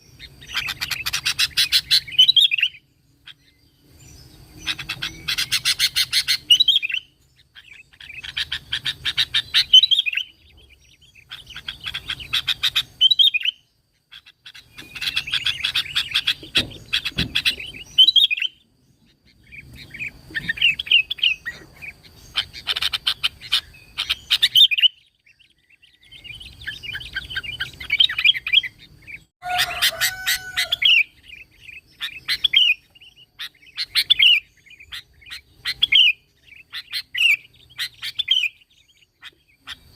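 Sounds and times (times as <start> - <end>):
bird chattering song: 0.0 - 39.9
lower drawn-out bird call: 29.4 - 31.2.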